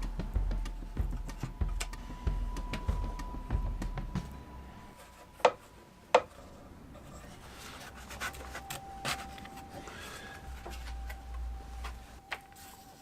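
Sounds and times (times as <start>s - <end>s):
faint rubbing and scraping: 4.8s - 13.0s.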